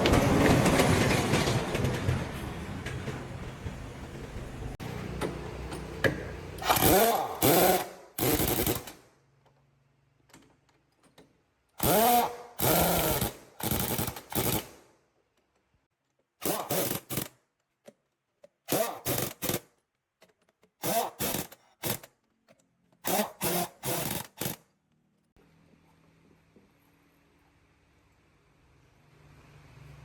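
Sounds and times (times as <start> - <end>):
pneumatic impact wrench bursts: 6.6 - 9.1, 11.8 - 14.8, 16.4 - 17.3, 18.7 - 19.7, 20.8 - 22.1, 23.0 - 24.6.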